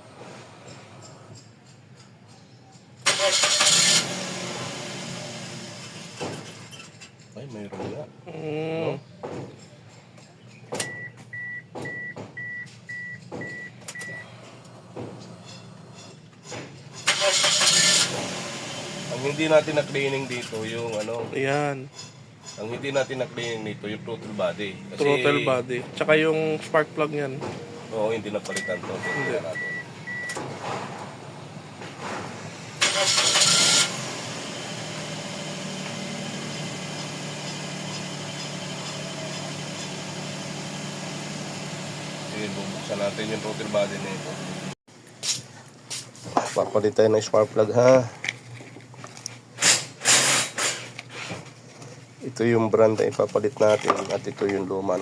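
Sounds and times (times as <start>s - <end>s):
car engine idling: 0.0s - 7.7s, 10.2s - 44.8s
engine starter cranking: 3.0s - 7.3s, 17.0s - 21.2s, 32.4s - 34.8s
car warning chime beeping: 10.8s - 14.4s, 28.2s - 30.4s.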